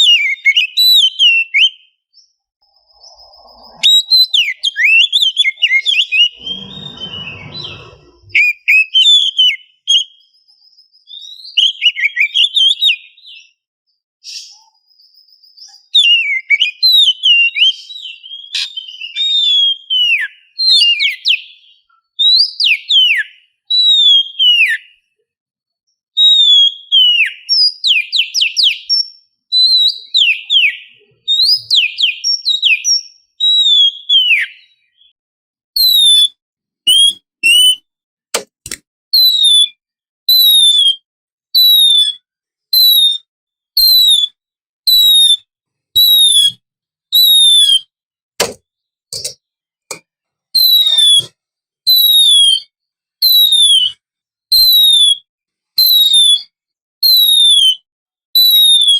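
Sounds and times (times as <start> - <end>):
bird singing whistled phrases: 0.0 - 13.6, 14.2 - 25.0, 26.2 - 35.1, 35.8 - 37.8, 39.2 - 41.0, 41.6 - 42.2, 42.8 - 47.9, 50.6 - 51.3, 51.9 - 55.2, 55.8 - 57.8, 58.4 - 58.9.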